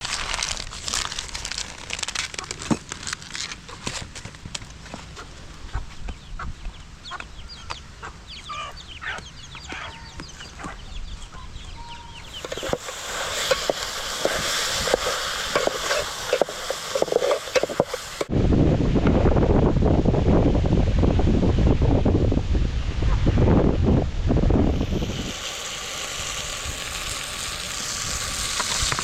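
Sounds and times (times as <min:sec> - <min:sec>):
steady hiss with crackling: 0:00.0 - 0:05.7, 0:12.1 - 0:18.3, 0:24.2 - 0:29.0
chickens clucking: 0:05.1 - 0:13.8.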